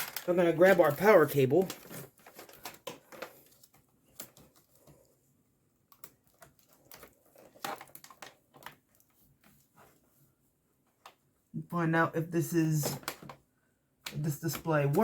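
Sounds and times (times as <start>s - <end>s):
plastic cable clicks and rustles: 0.0s - 5.2s, 5.8s - 9.9s, 12.8s - 15.0s.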